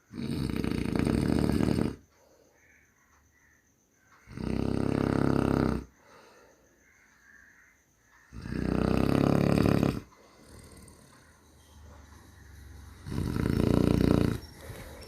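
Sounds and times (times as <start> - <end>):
person snoring loudly: 0.0 - 2.0, 4.3 - 5.9, 8.3 - 11.3, 12.8 - 15.0.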